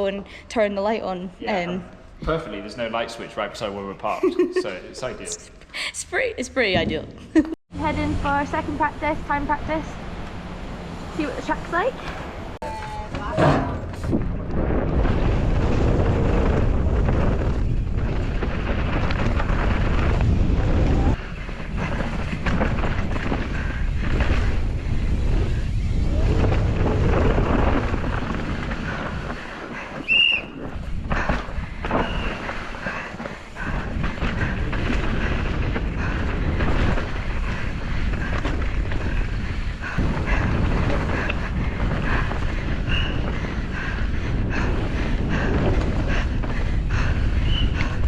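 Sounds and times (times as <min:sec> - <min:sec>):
wind buffeting microphone: 0:07.8 - 0:48.0
mountain bike rattling over rocks: 0:14.3 - 0:47.8.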